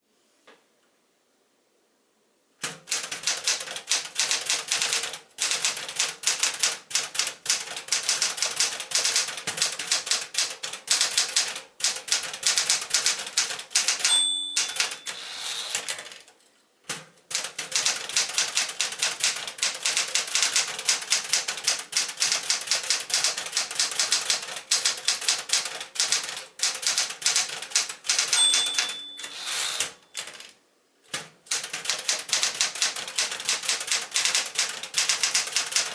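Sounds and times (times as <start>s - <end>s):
manual typewriter typing: 2.6s - 16.3s, 16.9s - 35.9s
typewriter margin bell: 2.9s - 16.2s, 17.4s - 30.5s, 31.5s - 35.9s.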